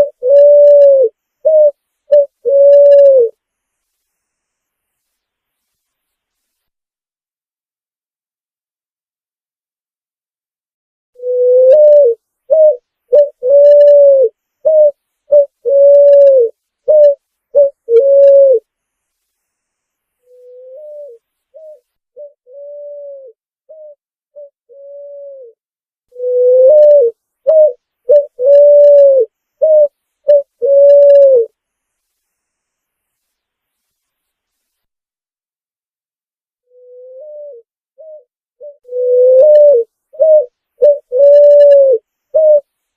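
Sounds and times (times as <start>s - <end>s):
pigeon cooing: 0.0s - 3.4s, 11.2s - 18.7s, 20.3s - 31.5s, 36.7s - 42.7s.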